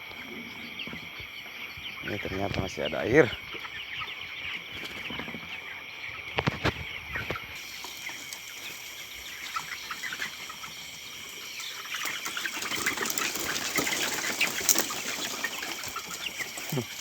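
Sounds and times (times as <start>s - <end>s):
chickens peeping: 0.0s - 17.0s.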